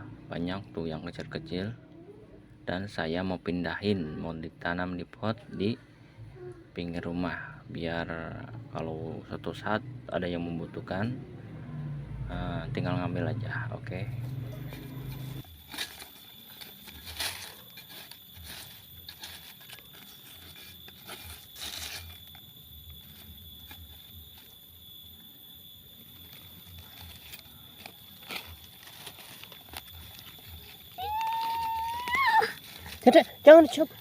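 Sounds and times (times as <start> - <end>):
thin steady high tone: 12.2 - 34.0
leaves rustling and crackling: 14.5 - 24.6, 25.9 - 34.0
rising high-pitched call: 30.7 - 34.0.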